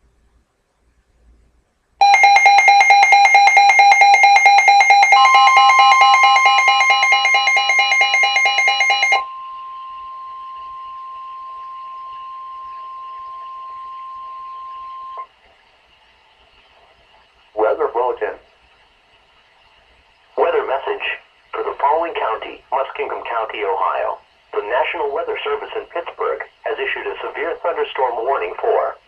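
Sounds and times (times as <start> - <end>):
faint hiss: 0.0 - 2.0, 9.3 - 29.0
steady alarm tone: 2.0 - 15.3.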